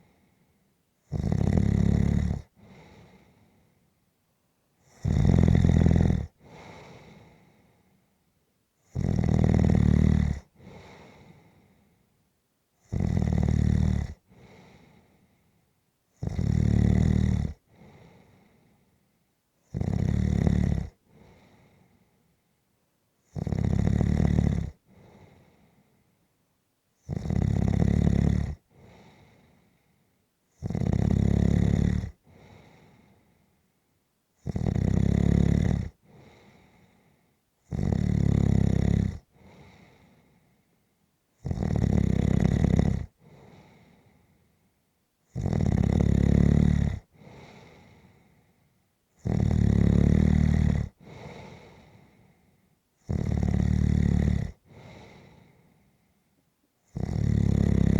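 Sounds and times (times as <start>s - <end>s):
faint breathing: 0.0s - 0.8s, 2.5s - 3.9s, 6.3s - 8.2s, 10.4s - 12.2s, 14.2s - 15.8s, 17.6s - 19.3s, 20.9s - 22.6s, 24.7s - 26.3s, 28.6s - 30.2s, 32.1s - 33.7s, 35.9s - 37.5s, 39.2s - 41.0s, 43.1s - 44.8s, 47.0s - 48.8s, 50.8s - 52.8s, 54.4s - 56.3s
person snoring: 1.1s - 2.8s, 4.9s - 6.7s, 8.9s - 10.9s, 12.9s - 14.6s, 16.2s - 17.6s, 19.7s - 21.3s, 23.3s - 24.8s, 27.1s - 29.2s, 30.6s - 32.7s, 34.4s - 36.5s, 37.7s - 39.7s, 41.4s - 43.7s, 45.3s - 48.0s, 49.2s - 52.0s, 53.0s - 55.4s, 56.9s - 57.9s.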